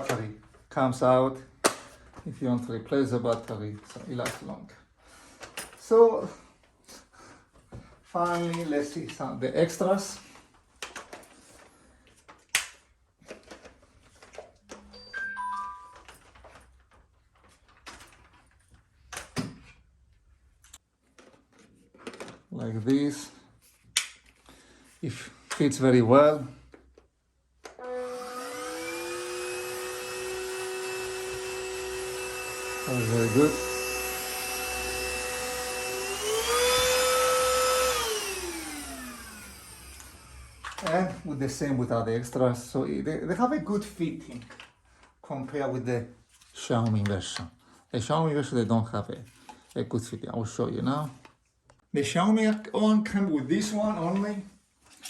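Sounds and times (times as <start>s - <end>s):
plastic attachments clicking and scraping: 3.1s - 4.6s, 8.2s - 14.9s, 16.0s - 19.4s, 20.6s - 24.4s, 26.7s - 42.8s, 43.7s - 45.6s
vacuum cleaner motor whine: 27.6s - 41.2s.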